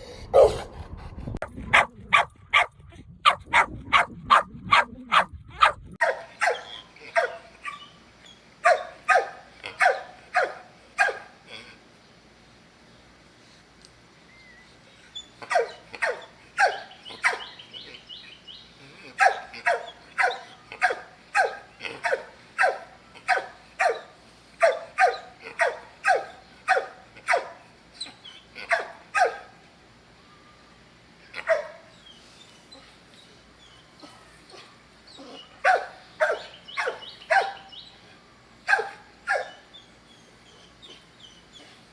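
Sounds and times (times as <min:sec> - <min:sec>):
dog barking: 0:00.4 - 0:00.7, 0:01.7 - 0:07.8, 0:08.6 - 0:11.3, 0:15.5 - 0:17.5, 0:19.2 - 0:27.6, 0:28.6 - 0:29.5, 0:31.4 - 0:31.8, 0:35.6 - 0:37.7, 0:38.7 - 0:39.6.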